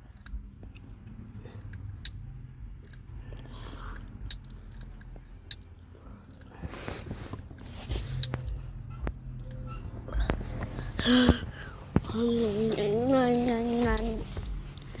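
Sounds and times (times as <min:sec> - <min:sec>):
sharp clicks: 0:04.0 - 0:05.7
crackling and rustling: 0:06.3 - 0:15.0.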